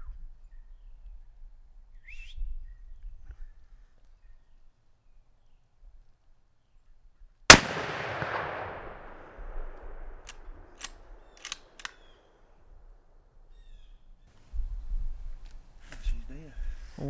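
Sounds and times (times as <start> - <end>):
rifle shot with long echo: 7.5 - 11.9
short sharp clicks: 7.5 - 12.0.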